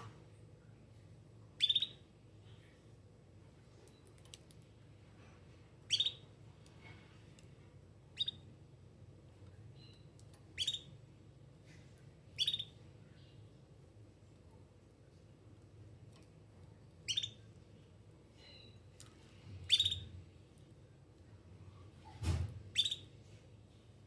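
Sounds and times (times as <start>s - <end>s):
faint low hum: 0.0s - 24.0s
canary chirping: 1.6s - 2.1s, 5.8s - 6.4s, 8.1s - 8.5s, 9.7s - 11.0s, 12.3s - 13.3s, 17.0s - 17.6s, 19.6s - 20.4s, 22.6s - 23.2s.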